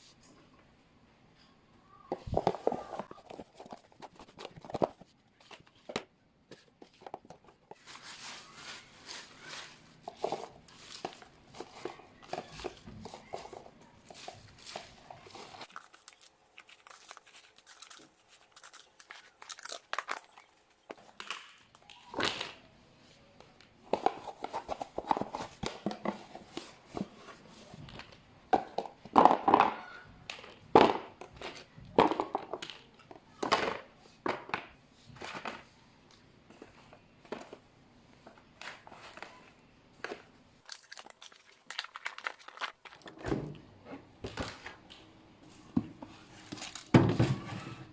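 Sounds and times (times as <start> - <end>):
plastic bags crinkling: 6.6 - 22.6, 40.0 - 43.1.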